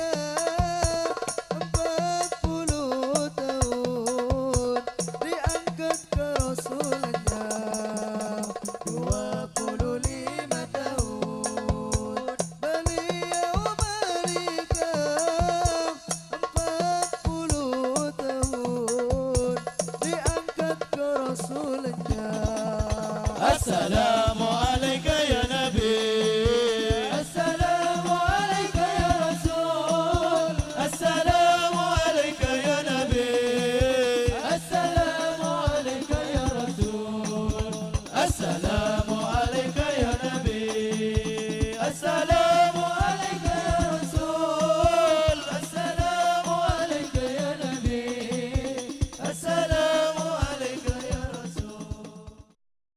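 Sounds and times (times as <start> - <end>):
frame drums beating fast rhythm: 0.0 - 52.6
voices singing melismatic melody: 23.2 - 52.2.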